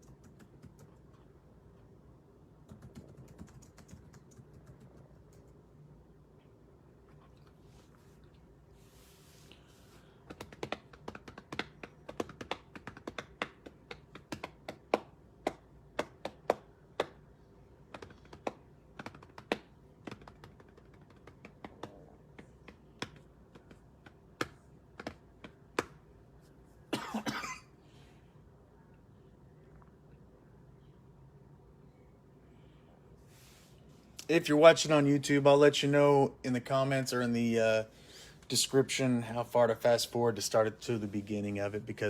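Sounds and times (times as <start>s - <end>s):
computer keyboard typing: 0.0s - 1.2s, 2.7s - 5.6s, 10.3s - 17.1s, 17.9s - 25.9s.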